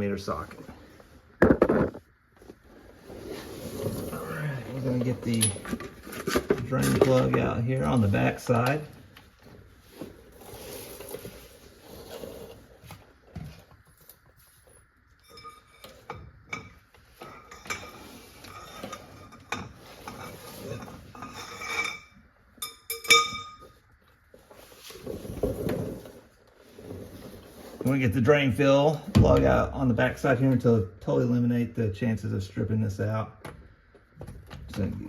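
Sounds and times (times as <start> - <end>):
metal tools clinking: 5.0 - 7.4, 15.2 - 23.8.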